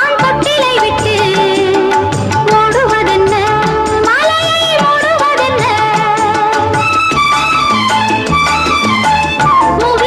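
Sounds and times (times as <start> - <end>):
steady percussion beat: 0.0 - 10.0
film song with held melodic note: 0.3 - 10.0.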